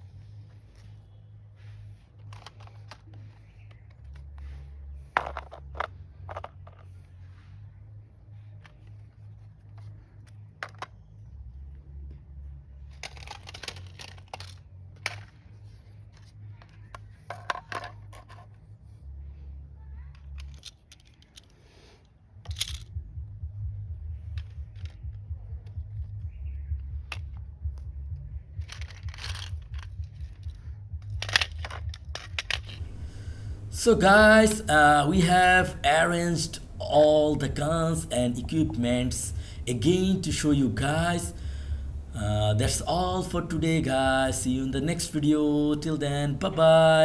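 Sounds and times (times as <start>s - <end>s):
plastic toys clicking and knocking: 2.2s - 7.0s, 9.7s - 11.0s, 12.9s - 18.6s, 20.1s - 21.6s, 22.4s - 23.0s, 24.3s - 25.2s, 28.6s - 34.9s
steady low hum: 32.6s - 47.0s.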